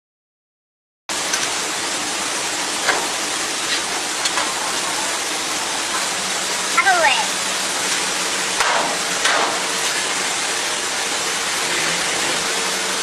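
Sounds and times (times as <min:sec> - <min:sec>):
rice mill machinery rushing: 0:01.1 - 0:13.0.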